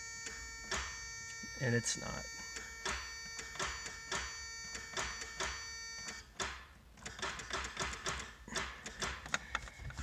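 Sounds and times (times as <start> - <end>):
electronic warning buzzer: 0.0 - 6.3.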